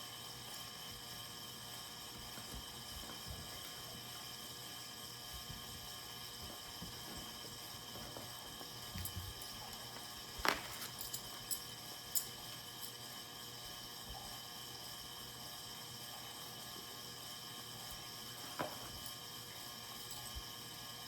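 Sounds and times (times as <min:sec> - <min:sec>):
light taps and handling noises: 0:09.0 - 0:11.3.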